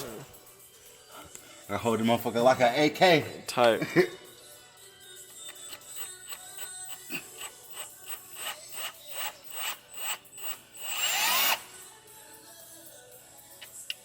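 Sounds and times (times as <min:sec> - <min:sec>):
power drill whining: 0:05.4 - 0:11.8.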